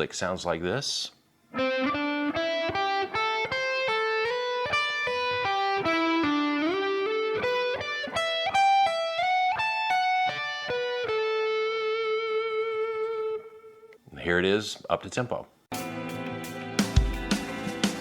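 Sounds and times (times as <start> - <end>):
electric guitar single-note lick: 1.6 - 13.9.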